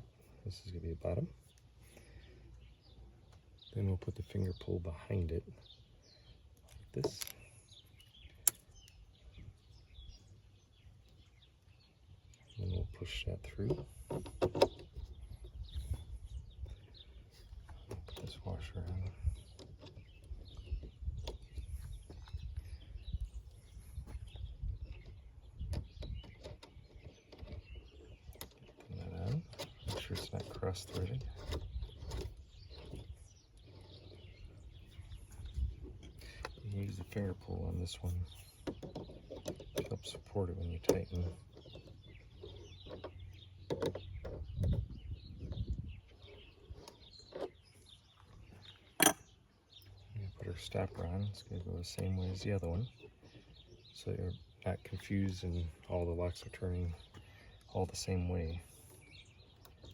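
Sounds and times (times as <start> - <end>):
birds chirping: 0.0 - 59.9
metal lock parts clicking: 6.6 - 9.0, 49.0 - 49.3
metal lock parts clicking and knocking: 6.6 - 9.0, 38.6 - 44.8, 48.9 - 49.3.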